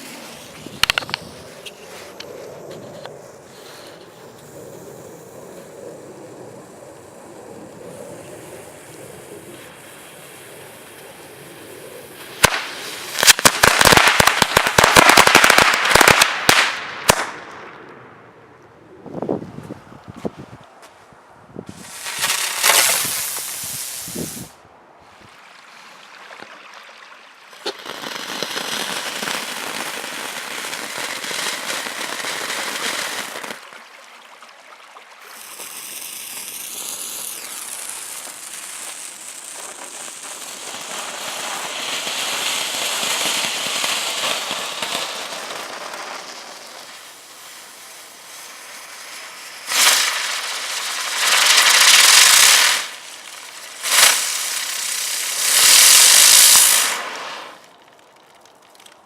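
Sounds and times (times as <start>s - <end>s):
firework bursts: 0.0s - 6.8s, 8.0s - 18.1s, 21.7s - 24.6s, 27.5s - 33.8s, 35.2s - 57.8s
fireworks hissing and crackling: 0.0s - 17.7s, 21.7s - 24.6s, 27.5s - 34.0s, 35.1s - 59.0s
firework whistle: 21.7s - 24.6s, 35.3s - 45.4s, 46.0s - 53.0s, 53.6s - 57.7s.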